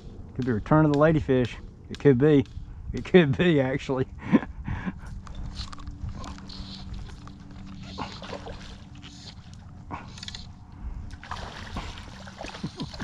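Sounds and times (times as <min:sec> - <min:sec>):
water splashing around canoe: 0:07.0 - 0:09.5, 0:11.1 - 0:13.0.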